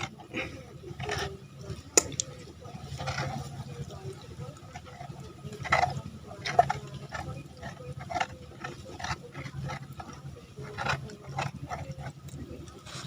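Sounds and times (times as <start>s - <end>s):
low steady hum: 0.0s - 13.0s
person chewing coconut: 0.0s - 13.0s.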